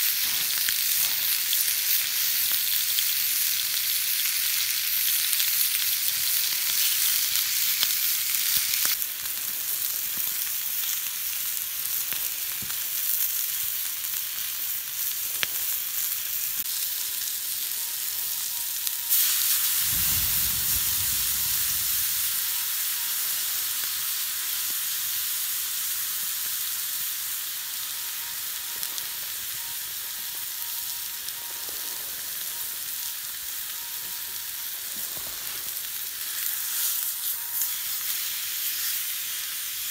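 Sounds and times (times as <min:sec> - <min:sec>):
food sizzling in a pan: 0:00.0 - 0:39.9
low rumble: 0:19.7 - 0:23.0.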